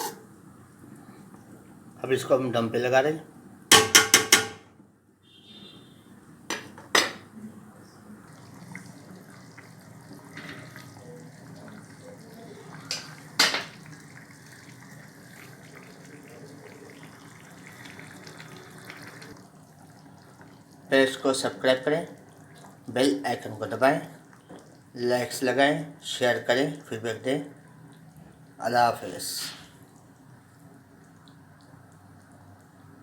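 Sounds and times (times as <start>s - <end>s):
metal pots and utensils clinking: 0.0s - 0.2s, 6.5s - 7.3s, 12.8s - 13.8s
pots hissing on stove: 6.5s - 27.1s.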